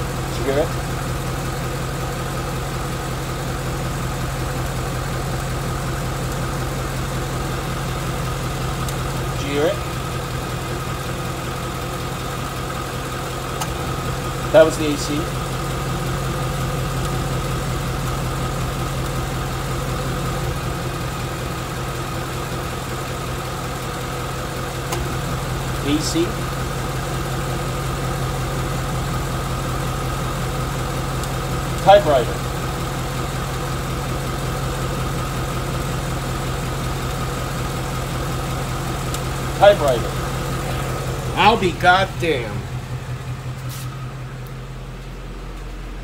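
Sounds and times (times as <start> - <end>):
car engine idling: 0.0 - 46.0
rapid engine ticking: 0.0 - 46.0
compressor clutch click: 13.5 - 13.8, 24.9 - 25.2.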